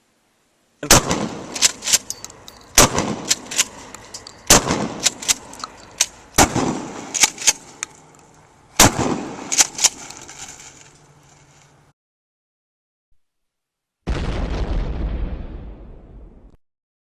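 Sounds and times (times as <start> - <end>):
shotgun shots echoing: 0.8 - 7.9, 8.8 - 10.1
shotgun pump racking clack: 1.6 - 6.2.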